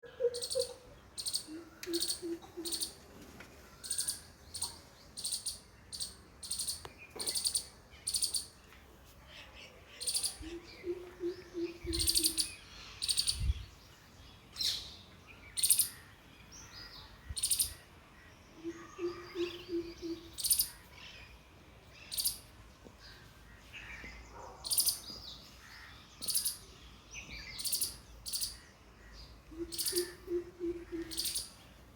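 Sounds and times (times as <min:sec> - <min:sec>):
high bird chirps: 0:10.0 - 0:13.6.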